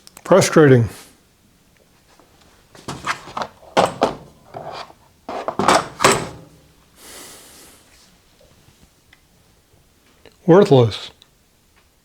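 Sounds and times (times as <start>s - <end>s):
sliding scrape: 2.8s - 6.5s
plastic trays clattering: 2.8s - 6.7s.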